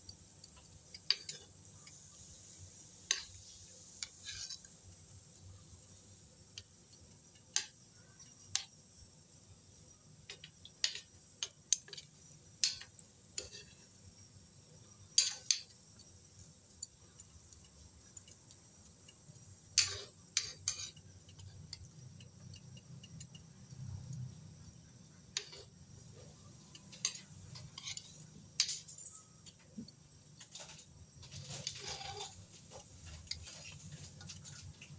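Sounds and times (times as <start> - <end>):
utensils and dishes clinking: 26.0 - 34.9.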